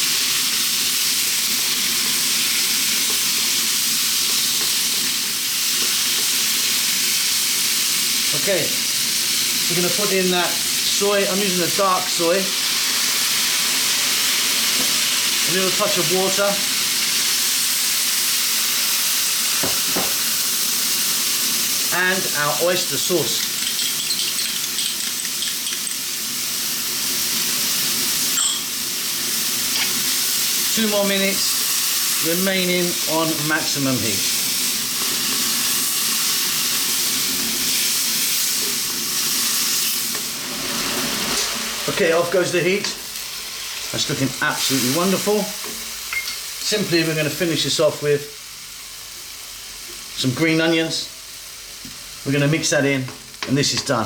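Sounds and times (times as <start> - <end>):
stir-fry sizzling in a wok: 0.0 - 54.0
metallic clink: 23.4 - 26.1, 28.4 - 28.7.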